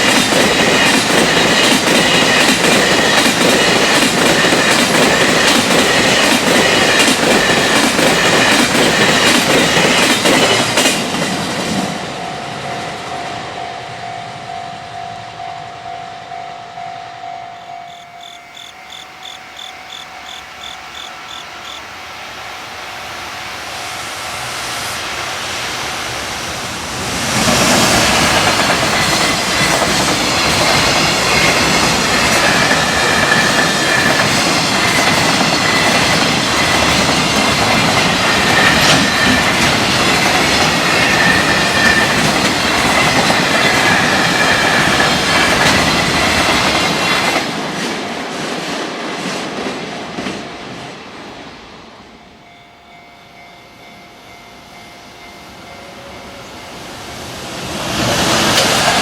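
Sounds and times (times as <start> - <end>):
train wheels clattering over rail joints: 0.0 - 11.9, 27.3 - 50.8, 58.0 - 59.0
level-crossing bell dinging: 12.0 - 21.1, 52.1 - 57.1.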